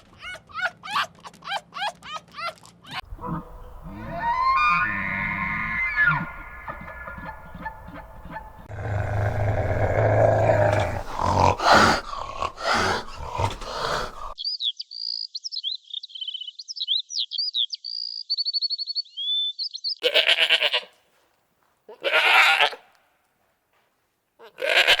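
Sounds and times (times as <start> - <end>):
low rough grunting calls: 3.0 - 14.4
high chirping and whistling calls: 14.4 - 20.0
short bleats: 20.0 - 20.9, 21.9 - 22.9, 24.4 - 25.0.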